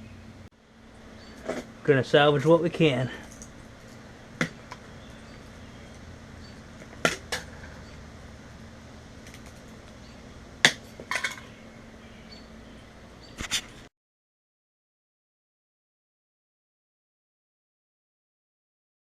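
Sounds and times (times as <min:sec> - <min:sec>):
faint steady hum: 0:00.0 - 0:13.9.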